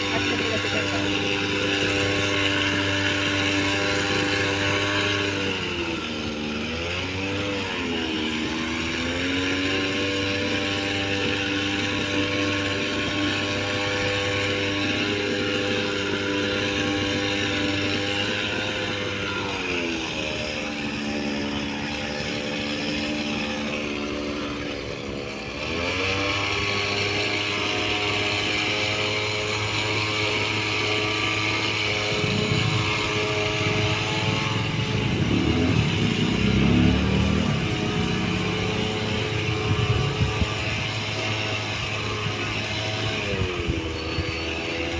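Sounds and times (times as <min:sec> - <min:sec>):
tree-cutting machine engine running: 0:00.0 - 0:44.9
low rumbling and crackling: 0:32.2 - 0:41.0.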